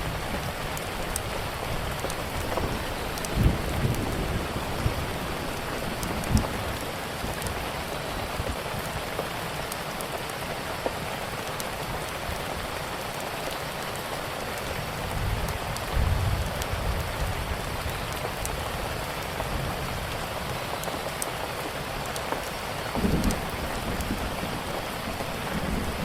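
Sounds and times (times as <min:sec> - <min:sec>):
wood fire crackling: 0:00.0 - 0:13.9, 0:20.8 - 0:26.0
steady rain falling: 0:00.0 - 0:26.0.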